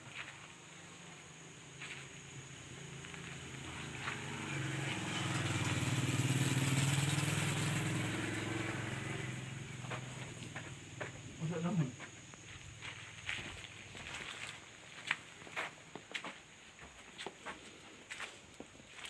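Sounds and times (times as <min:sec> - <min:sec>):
vehicle engine passing by: 0:01.4 - 0:12.0.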